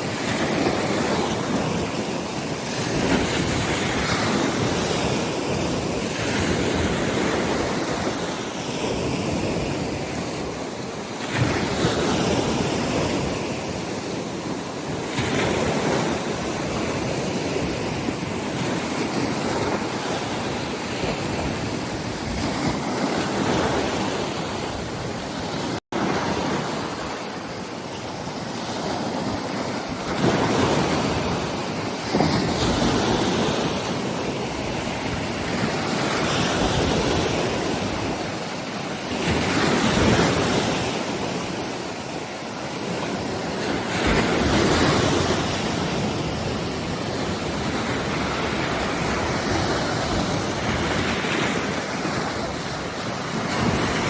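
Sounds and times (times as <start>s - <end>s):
waves breaking and washing ashore: 0.0s - 54.0s
wind gusting on microphone: 0.0s - 54.0s.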